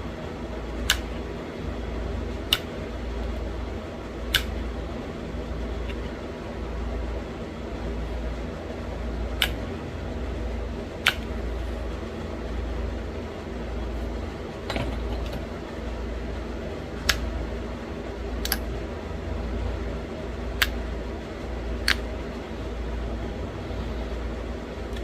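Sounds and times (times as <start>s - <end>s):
fan humming: 0.0s - 25.0s
stone flake snapping clicks: 2.5s - 2.7s, 4.3s - 4.5s, 11.0s - 11.3s, 17.0s - 17.3s, 18.4s - 18.6s, 21.8s - 22.1s.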